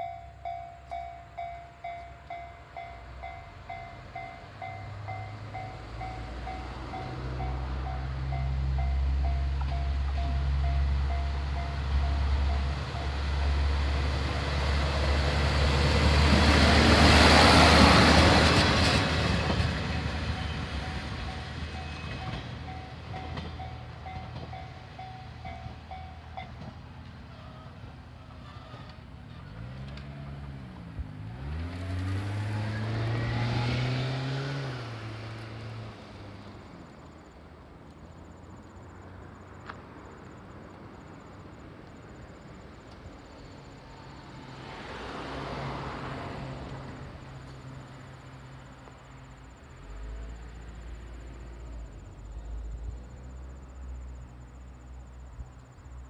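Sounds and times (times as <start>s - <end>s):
crossing alarm bell: 0.0s - 13.6s, 19.1s - 26.8s
diesel railcar passing: 0.0s - 56.0s.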